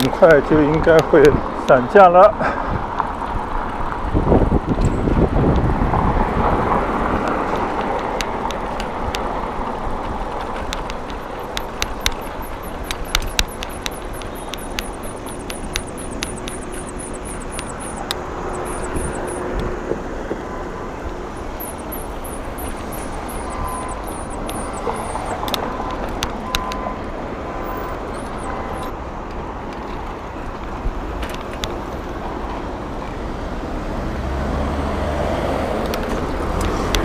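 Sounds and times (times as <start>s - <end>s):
wind and road noise: 0.0s - 37.0s
sharp clicks: 7.2s - 20.0s, 21.4s - 27.1s, 27.7s - 28.9s
quick high chirps: 11.2s - 19.5s, 21.4s - 25.4s, 28.1s - 28.9s.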